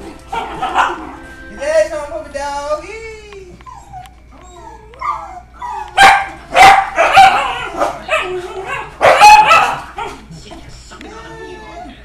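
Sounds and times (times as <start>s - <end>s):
dogs whining and yipping: 3.6s - 10.2s
loud dog barks: 6.0s - 10.2s.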